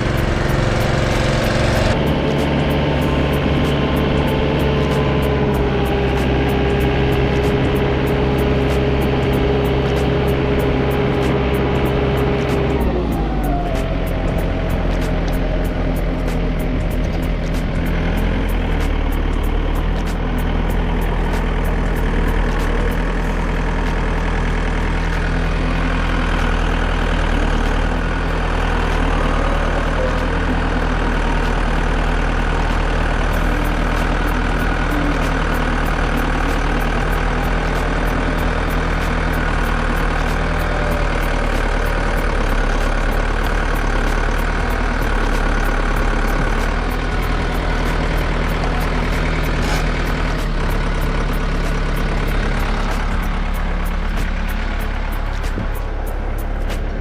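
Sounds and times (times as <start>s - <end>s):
tractor engine idling: 0.0s - 57.0s.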